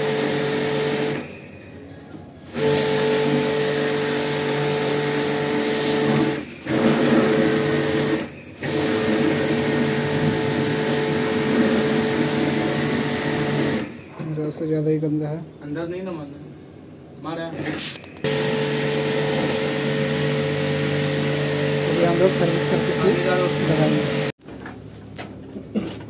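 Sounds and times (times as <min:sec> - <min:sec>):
small electric motor humming: 0:18.2 - 0:24.3.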